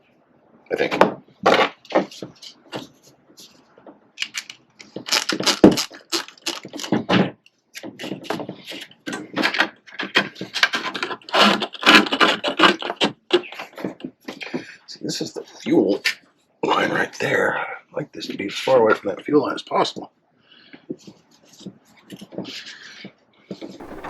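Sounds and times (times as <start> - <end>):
metal hose crinkling and scraping: 4.2 - 7.0.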